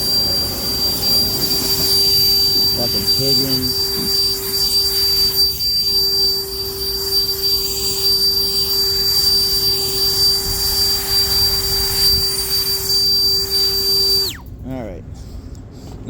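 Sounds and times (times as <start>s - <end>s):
rushing air: 0.0s - 14.4s
blower whining: 0.0s - 14.9s.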